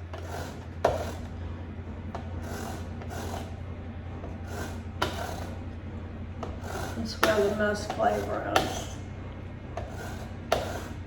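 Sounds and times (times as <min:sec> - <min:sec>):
lime rasping on zester: 0:00.0 - 0:01.4, 0:02.2 - 0:05.7, 0:06.4 - 0:09.0, 0:09.8 - 0:11.0
low hum: 0:00.0 - 0:11.0.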